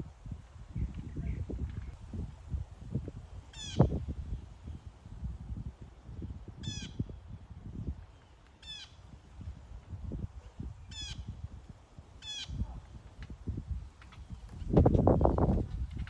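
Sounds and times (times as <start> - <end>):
eagle calling: 3.5 - 4.0, 10.4 - 11.4, 12.2 - 13.0.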